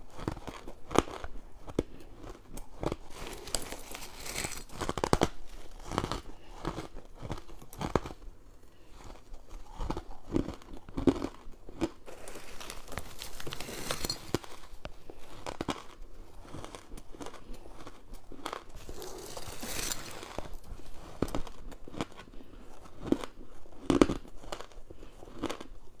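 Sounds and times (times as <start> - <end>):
crushed ice crunching: 3.1 - 5.4, 11.8 - 14.9, 18.7 - 20.9.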